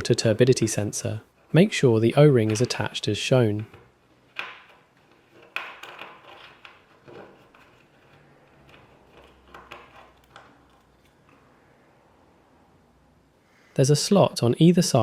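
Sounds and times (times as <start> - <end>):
plastic parts clicking and rustling: 3.5 - 11.5.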